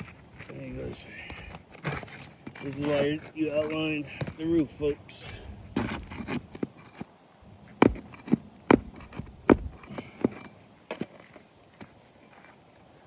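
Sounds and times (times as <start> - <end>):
metallic clinks of roofing tool: 0.0 - 4.7, 8.0 - 11.4.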